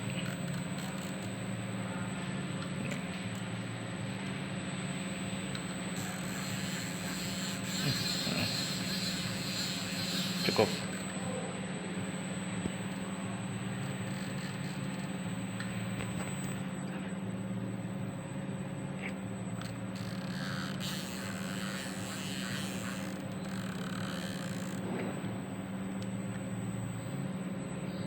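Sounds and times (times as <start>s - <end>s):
machine humming: 5.2s - 16.2s, 20.0s - 24.8s.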